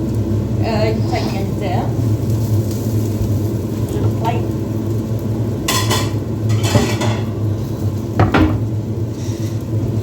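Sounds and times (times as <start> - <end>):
steady low hum: 0.0 - 10.0
cookware clattering: 5.7 - 7.4.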